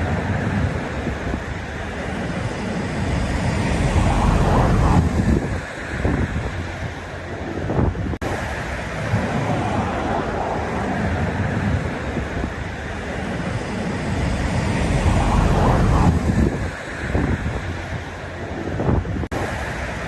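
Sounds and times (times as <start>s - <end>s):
sea waves breaking: 0.0s - 20.0s
wind on microphone: 0.0s - 20.0s.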